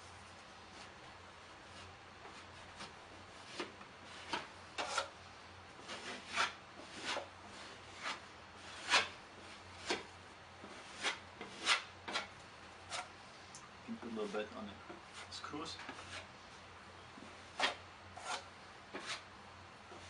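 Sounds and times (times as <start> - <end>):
drywall knife scraping: 1.6 - 13.2, 14.0 - 16.3, 17.2 - 19.3.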